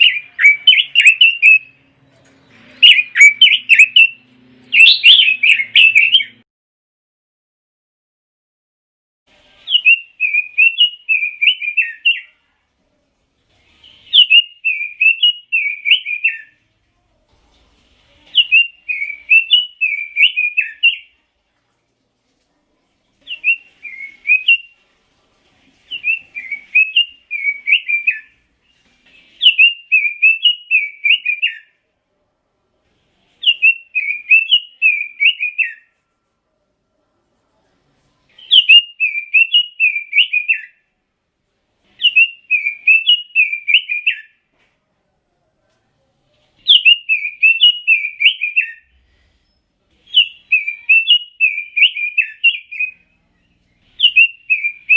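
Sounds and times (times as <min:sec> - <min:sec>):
bird warbling song: 0:02.6 - 0:06.4.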